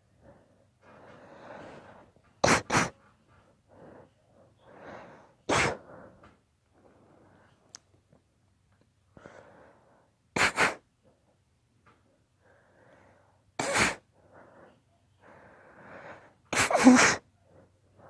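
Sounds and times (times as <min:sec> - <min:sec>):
in-breath: 0:00.0 - 0:02.2, 0:03.4 - 0:07.7, 0:09.1 - 0:10.2, 0:12.0 - 0:16.5, 0:17.2 - 0:18.0
girl sneezing: 0:02.4 - 0:03.0, 0:05.5 - 0:05.8, 0:10.4 - 0:10.8, 0:13.6 - 0:14.0, 0:16.5 - 0:17.3.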